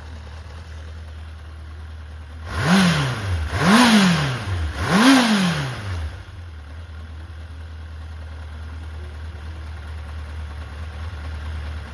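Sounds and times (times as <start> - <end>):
motorcycle engine idling: 0.0 - 11.9.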